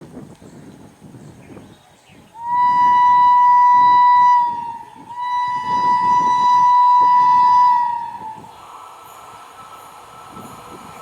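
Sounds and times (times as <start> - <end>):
locomotive air horn blast: 2.4 - 8.5
train rolling past: 2.4 - 11.0.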